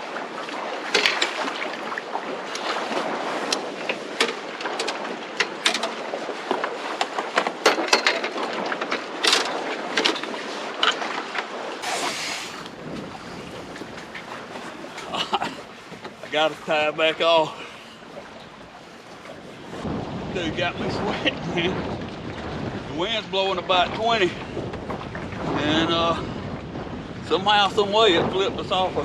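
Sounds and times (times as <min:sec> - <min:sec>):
water slapping boat hull: 0:00.0 - 0:29.0
wind gust noise: 0:11.8 - 0:29.0
sharp knocks and clatter: 0:24.8 - 0:25.5.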